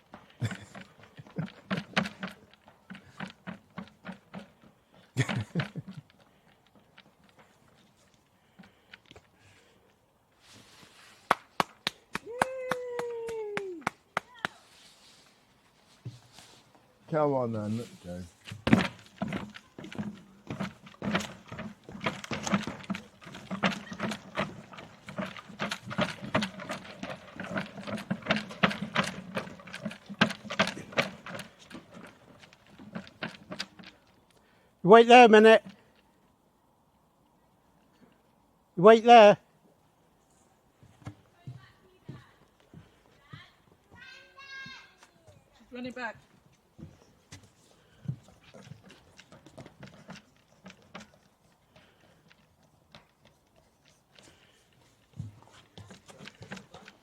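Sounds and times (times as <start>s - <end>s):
running footsteps on a path: 0.0s - 9.7s, 18.1s - 34.6s, 40.8s - 45.1s, 46.0s - 57.0s
footsteps on a path: 13.4s - 34.5s, 40.8s - 45.3s.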